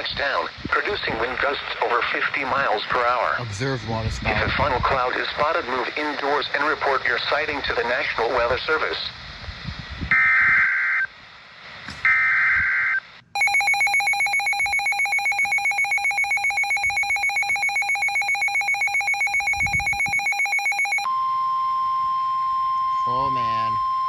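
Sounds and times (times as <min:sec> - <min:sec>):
steady alarm tone: 0:12.1 - 0:24.0
digital data tone bursts: 0:13.4 - 0:21.1.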